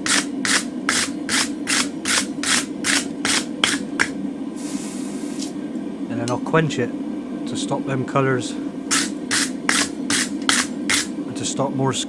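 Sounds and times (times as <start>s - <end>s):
wire brush scrubbing steel: 0.0s - 4.1s, 8.9s - 11.2s
steady low hum: 0.0s - 12.0s.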